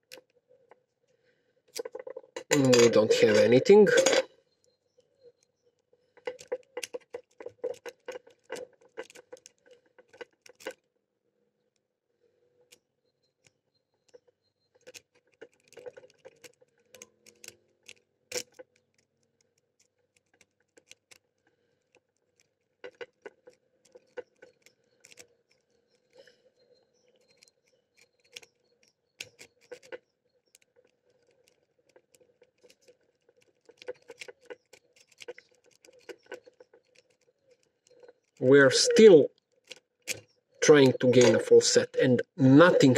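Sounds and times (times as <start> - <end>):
lock pick clicks and scrapes: 1.8 - 4.3, 6.2 - 10.8, 14.8 - 19.0, 29.2 - 38.4, 39.7 - 41.8.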